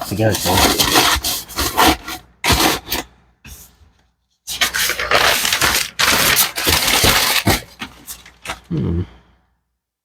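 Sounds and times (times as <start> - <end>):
paper and cardboard rustling: 0.0 - 3.8, 4.5 - 8.7
scraping and rubbing on table: 0.0 - 3.8.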